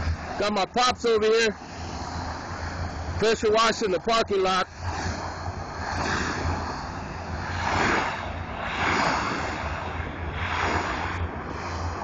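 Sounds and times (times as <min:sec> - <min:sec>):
engine droning: 0:00.0 - 0:12.0.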